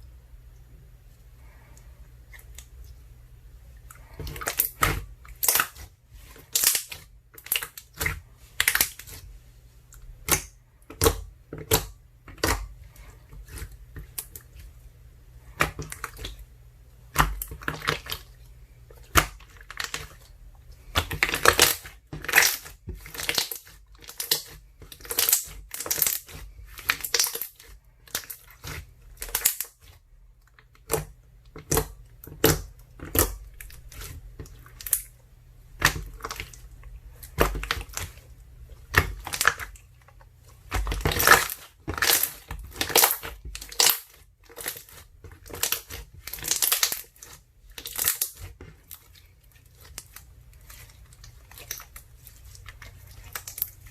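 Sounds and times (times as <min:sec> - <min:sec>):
slime squishing and crackling: 0:03.9 - 0:09.3, 0:09.9 - 0:14.8, 0:15.4 - 0:53.9.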